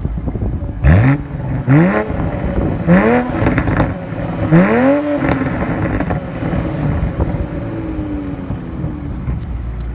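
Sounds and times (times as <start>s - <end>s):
car exhaust throttle blip: 0.9s - 9.9s
exhaust pops and crackles: 1.1s - 7.7s.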